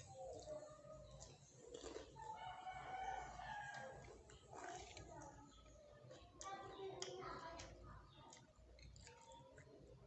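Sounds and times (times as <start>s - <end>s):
faint rooster crowing: 2.2s - 4.2s.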